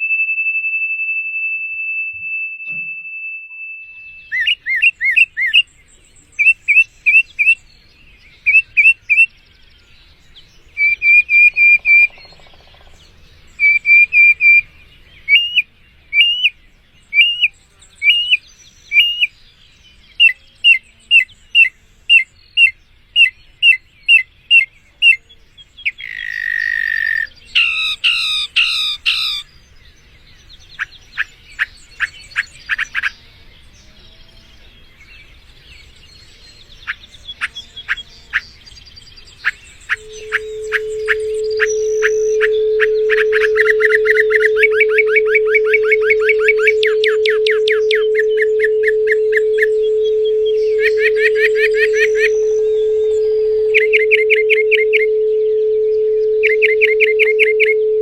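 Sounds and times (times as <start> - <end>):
songbird singing: 2.1 - 58.0
bird buzzy note: 39.9 - 58.0.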